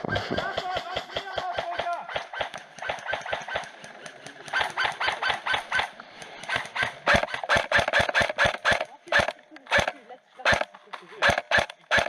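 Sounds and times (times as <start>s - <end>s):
running footsteps: 0.0s - 7.4s.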